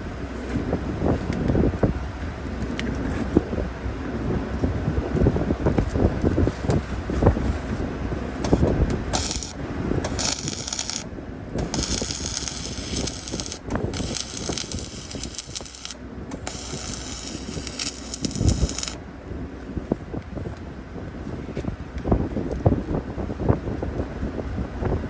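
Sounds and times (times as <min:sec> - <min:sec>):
wind rumble on microphone: 0:00.0 - 0:25.0
welding arc hissing and crackling: 0:08.5 - 0:19.0.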